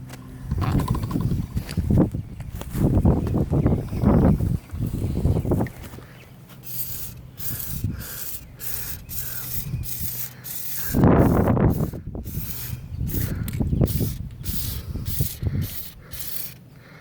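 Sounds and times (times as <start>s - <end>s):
aerosol spray hissing bursts: 6.6s - 16.6s.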